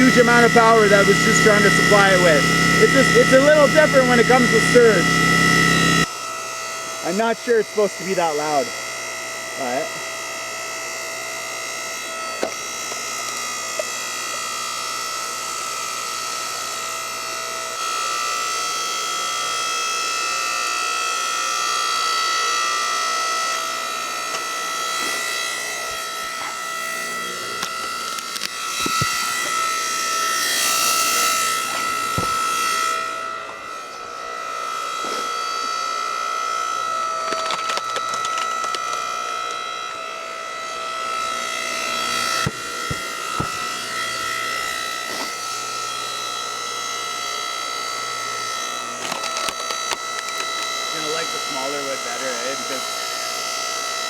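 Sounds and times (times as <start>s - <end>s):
log splitter motor whine: 0.0s - 54.0s
wood creaking and cracking: 37.3s - 39.6s, 49.0s - 50.8s.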